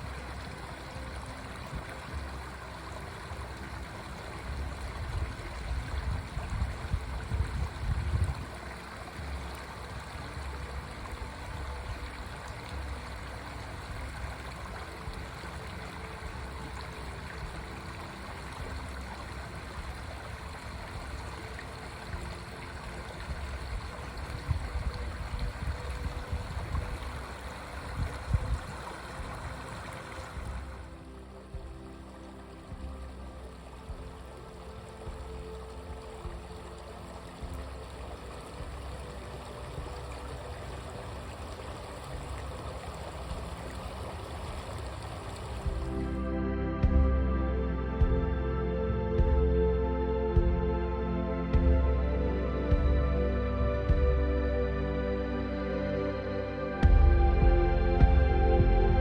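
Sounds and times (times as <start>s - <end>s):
stream flowing: 0.0s - 59.0s
low rumble: 56.7s - 59.0s.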